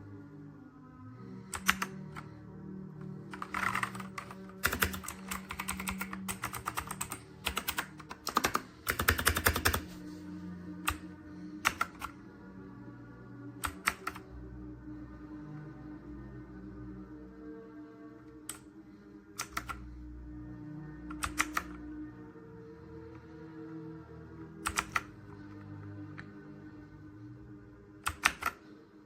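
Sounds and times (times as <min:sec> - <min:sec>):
clicky mechanical keyboard typing: 0:01.5 - 0:02.2, 0:03.3 - 0:09.9, 0:11.6 - 0:12.2, 0:13.6 - 0:14.2, 0:19.4 - 0:19.8, 0:21.1 - 0:21.8, 0:24.6 - 0:25.1, 0:28.0 - 0:28.6.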